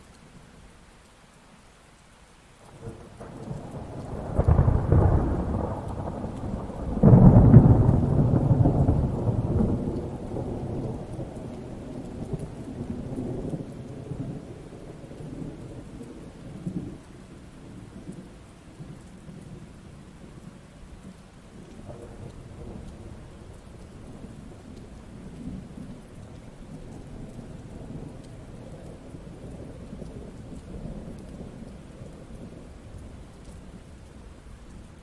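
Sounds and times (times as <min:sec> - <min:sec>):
steady rain: 0:00.0 - 0:35.0
thunder clap: 0:02.7 - 0:14.6
thunder rumbling: 0:02.7 - 0:34.4.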